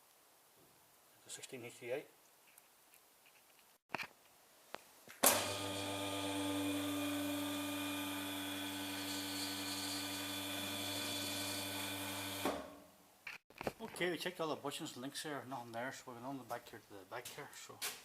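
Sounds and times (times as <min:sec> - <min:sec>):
motor humming: 0:05.2 - 0:12.7.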